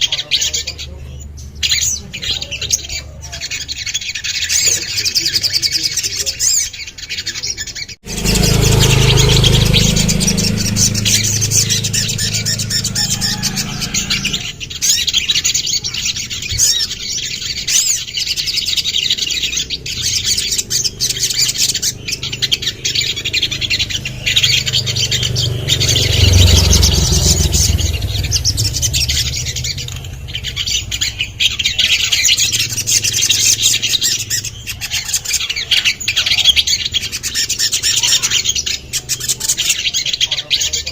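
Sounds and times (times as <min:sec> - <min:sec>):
bird calling with high chirps: 0:00.0 - 0:40.9
low rumble: 0:08.0 - 0:14.8, 0:20.1 - 0:33.2.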